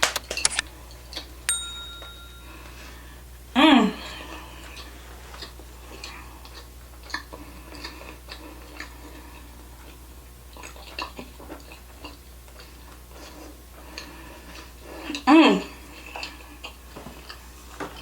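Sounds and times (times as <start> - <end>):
person chewing food: 4.7 - 15.2, 15.9 - 17.5.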